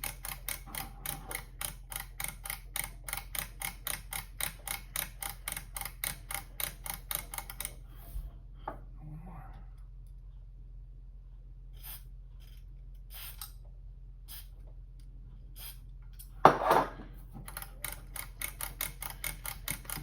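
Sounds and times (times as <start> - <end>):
spray can hiss: 13.1 - 13.5.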